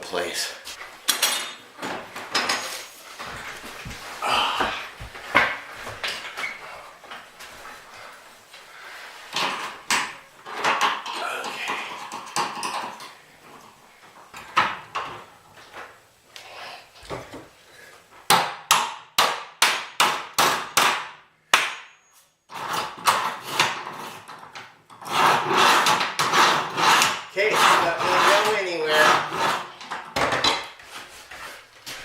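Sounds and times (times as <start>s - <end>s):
handling noise and knocks: 1.1s - 6.4s.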